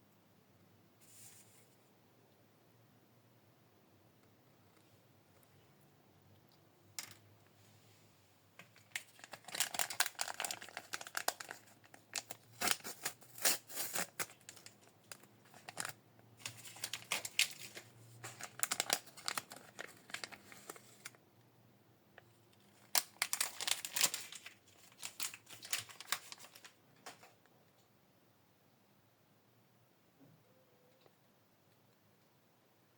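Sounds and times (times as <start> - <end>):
wrappers crinkling and tearing: 8.6 - 21.2, 22.7 - 27.3.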